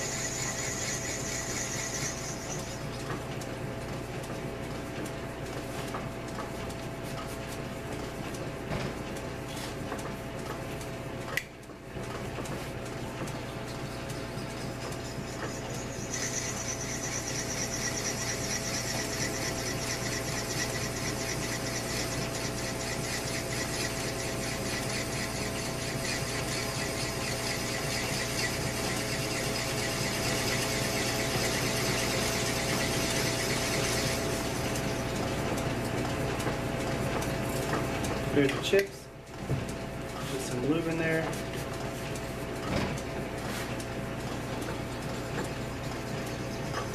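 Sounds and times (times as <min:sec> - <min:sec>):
drill bit squealing: 0:00.0 - 0:02.8, 0:14.2 - 0:35.1
lathe hum and gear whine: 0:00.0 - 0:05.4, 0:12.8 - 0:46.9.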